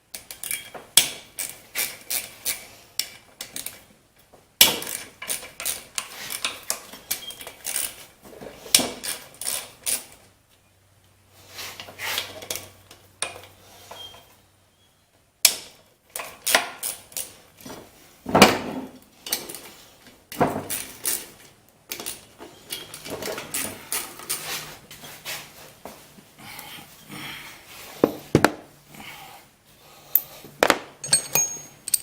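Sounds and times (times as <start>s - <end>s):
bolts set down on workbench: 28.0s - 28.7s
wrench on metal bolts: 31.0s - 32.0s.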